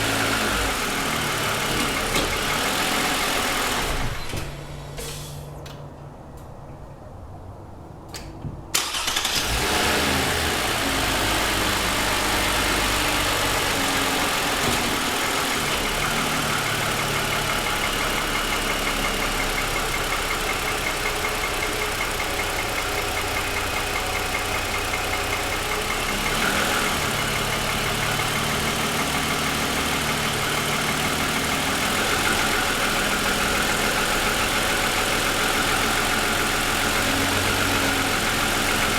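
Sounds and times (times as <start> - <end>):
engine knocking: 0.0 - 3.9, 12.4 - 38.9
car engine starting and idling: 0.0 - 6.0, 8.7 - 38.9.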